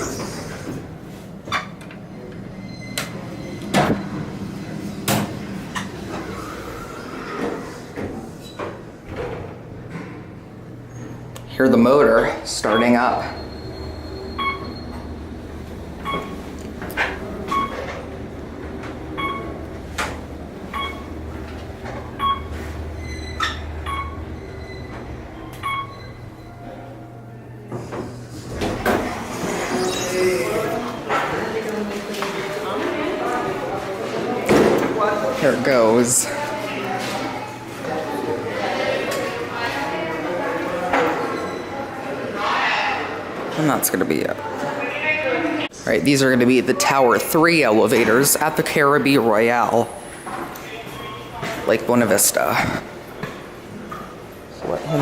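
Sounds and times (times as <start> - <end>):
elevator door clunks: 0.8 - 6.7, 12.7 - 29.6
low hum: 8.8 - 29.7.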